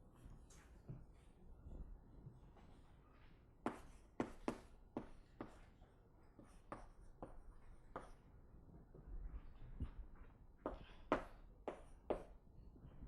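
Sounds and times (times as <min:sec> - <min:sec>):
writing taps on a board: 0:03.7 - 0:05.7, 0:06.4 - 0:08.2, 0:10.7 - 0:12.3.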